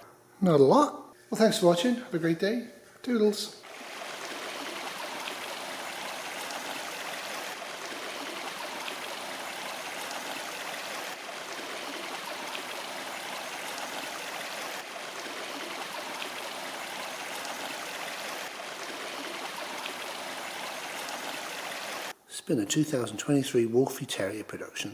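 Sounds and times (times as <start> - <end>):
stream water rushing: 3.6 - 22.1.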